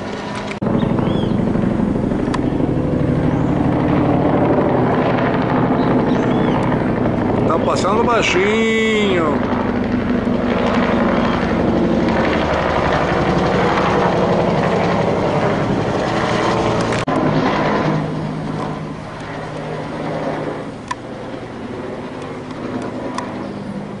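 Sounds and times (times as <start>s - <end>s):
helicopter rotor chopping: 0.0s - 24.0s.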